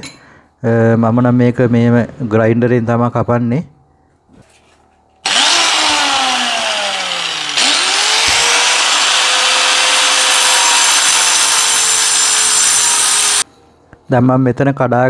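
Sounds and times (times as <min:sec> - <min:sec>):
angle grinder cutting into wall: 0:05.2 - 0:13.4.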